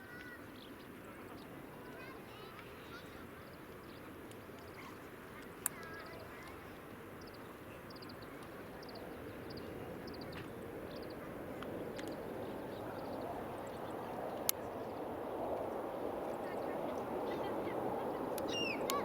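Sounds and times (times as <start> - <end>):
small birds chirping: 0.1 - 19.0
distant rushing rumble: 8.6 - 19.0.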